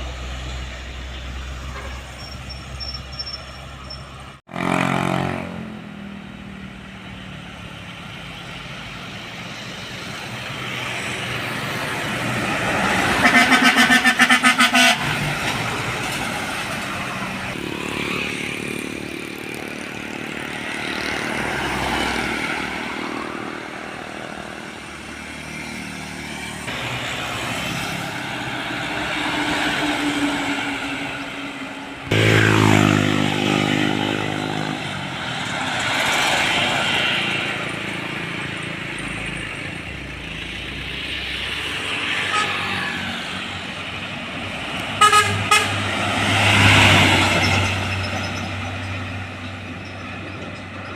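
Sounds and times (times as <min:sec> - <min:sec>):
loud pitched vehicle sound: 0:00.0 - 0:50.9
traffic passing on road: 0:00.0 - 0:50.9
vehicle horn pulses: 0:01.6 - 0:05.5, 0:13.2 - 0:15.2, 0:45.0 - 0:45.8.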